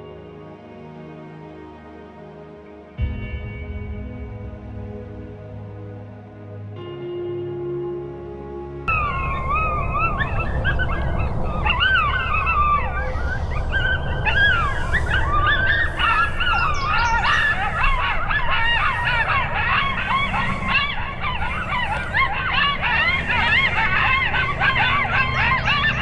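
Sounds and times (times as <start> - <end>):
coyotes howling and yipping: 8.9 - 26.0
wind rumble on microphone: 8.9 - 26.0.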